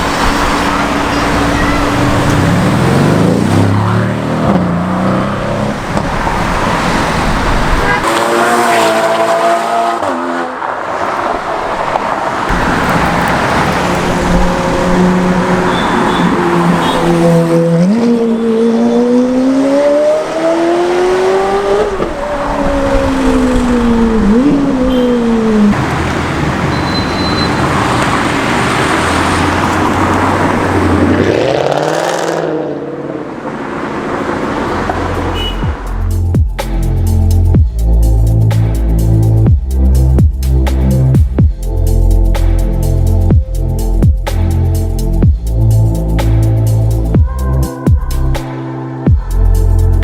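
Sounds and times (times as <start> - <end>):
car engine accelerating: 0.0 - 36.3
car engines in traffic: 0.0 - 36.3.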